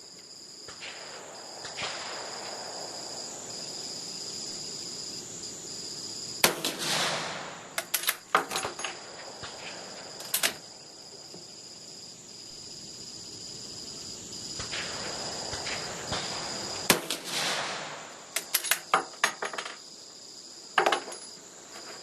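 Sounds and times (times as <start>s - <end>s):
crickets chirping: 0.0s - 22.0s
rifle shot with echo: 0.7s - 3.4s, 6.4s - 8.8s, 14.6s - 18.5s
rifle bolt metallic clicks: 7.8s - 8.7s.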